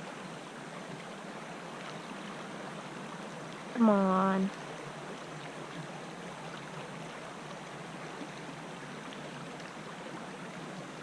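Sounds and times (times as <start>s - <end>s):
river water rushing: 0.0s - 11.0s.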